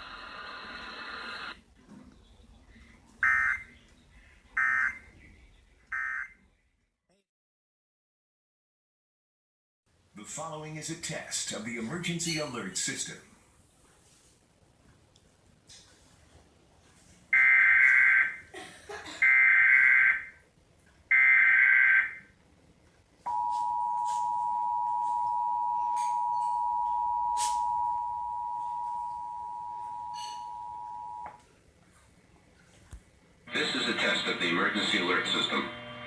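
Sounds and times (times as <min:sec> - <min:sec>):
two-tone attention signal: 0:23.3 - 0:31.4
buzzy data tone bursts: 0:33.5 - 0:36.0.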